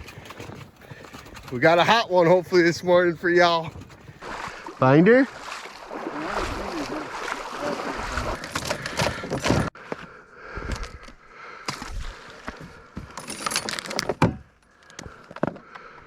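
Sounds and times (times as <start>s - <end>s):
gear clinking and rattling: 0.0s - 2.0s, 13.0s - 15.5s.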